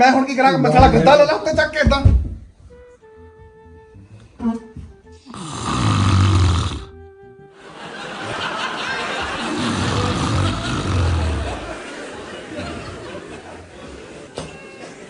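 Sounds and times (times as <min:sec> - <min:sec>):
short musical notes: 0:02.7 - 0:08.6
comic snoring: 0:05.2 - 0:07.1, 0:09.2 - 0:11.8.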